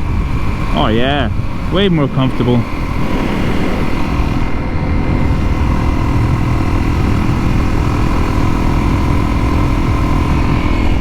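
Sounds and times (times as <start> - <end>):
motorcycle engine running steadily: 0.0 - 11.0.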